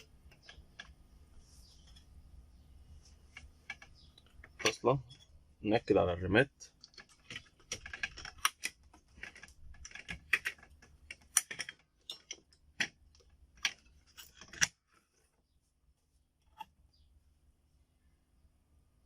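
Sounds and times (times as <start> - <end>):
memory modules clicking into slots: 6.8 - 14.8.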